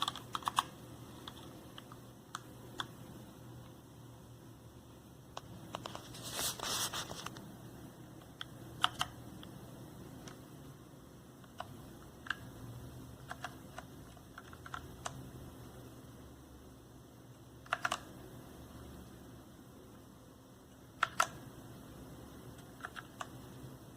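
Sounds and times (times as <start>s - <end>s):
keyboard key clicks: 8.3s - 9.2s, 17.6s - 18.1s, 21.0s - 21.4s.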